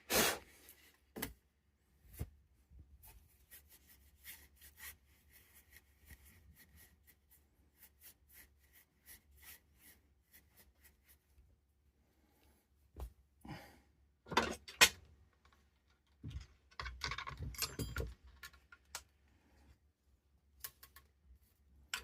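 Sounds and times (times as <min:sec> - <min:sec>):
small parts clicking and tapping: 0:14.6 - 0:19.1, 0:20.6 - 0:21.1.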